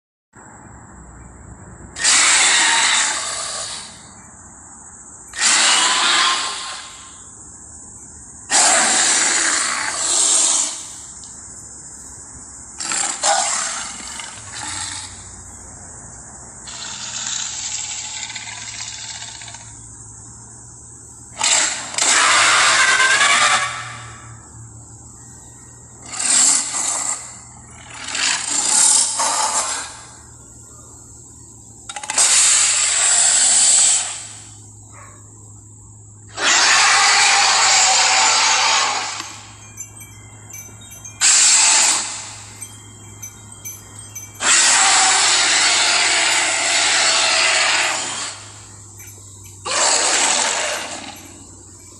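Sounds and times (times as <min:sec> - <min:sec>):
background hum and hiss: 0:00.4 - 0:51.9
dinosaur roars and growls: 0:44.4 - 0:48.4, 0:49.6 - 0:51.4.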